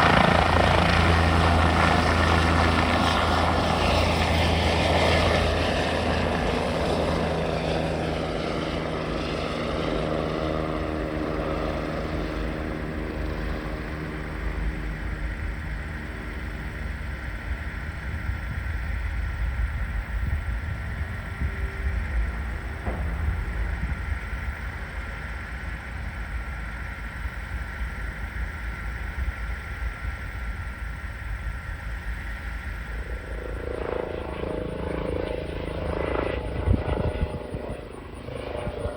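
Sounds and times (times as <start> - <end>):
propeller airplane engine droning: 0.0 - 38.9
low uneven rumble: 17.0 - 28.5.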